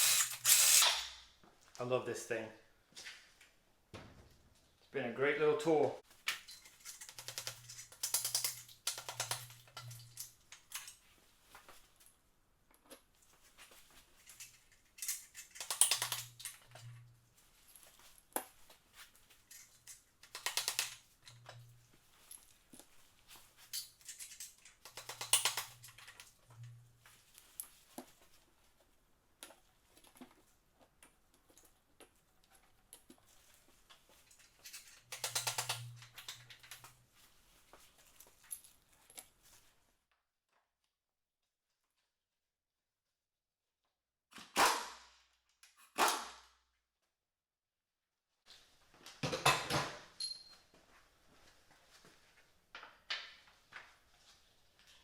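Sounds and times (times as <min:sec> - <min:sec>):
faint metal clinks: 0:50.2 - 0:50.7.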